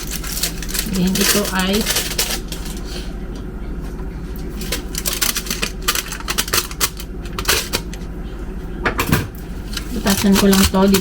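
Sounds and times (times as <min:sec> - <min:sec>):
aluminium foil crinkling and tapping: 0:00.0 - 0:02.9, 0:04.4 - 0:08.1, 0:09.6 - 0:11.0.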